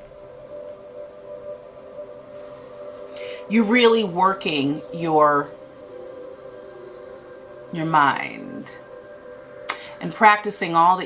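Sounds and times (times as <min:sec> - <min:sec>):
ambient drone music: 0:00.0 - 0:11.0.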